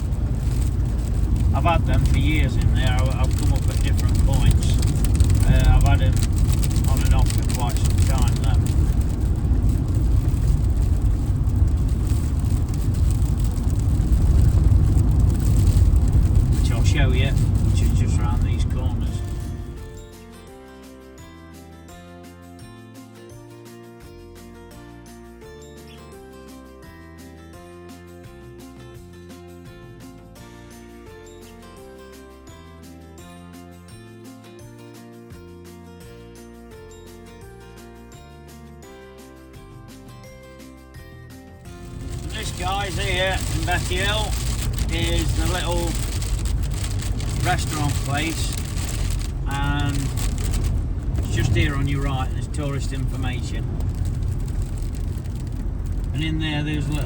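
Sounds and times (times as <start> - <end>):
engine and tyres on road: 0.0 - 20.1, 41.6 - 57.0.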